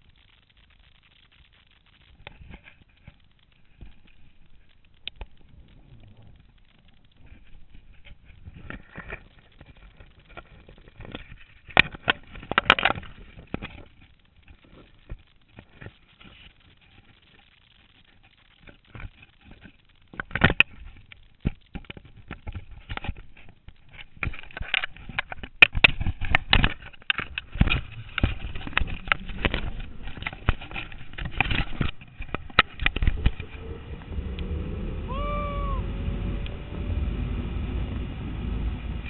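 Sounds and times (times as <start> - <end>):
wind: 0.0 - 39.0
trolley rumbling along cable: 33.1 - 39.0
person crying out: 35.1 - 35.9.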